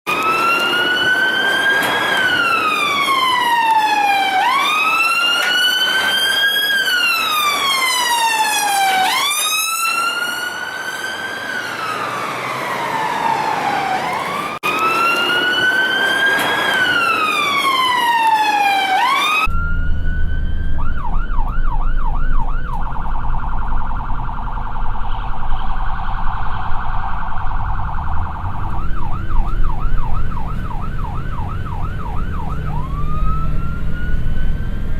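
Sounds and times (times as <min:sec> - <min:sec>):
rapid cycling siren: 0:00.1 - 0:34.9
siren wailing: 0:00.1 - 0:34.9
low rumble of a vehicle: 0:19.4 - 0:34.9.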